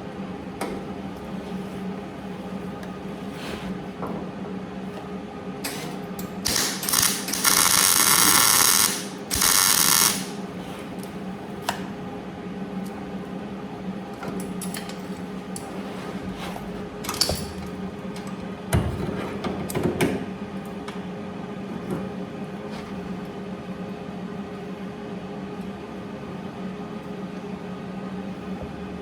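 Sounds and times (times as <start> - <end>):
steady electrical hum: 0.0 - 29.0
power tool hissing: 6.5 - 10.4.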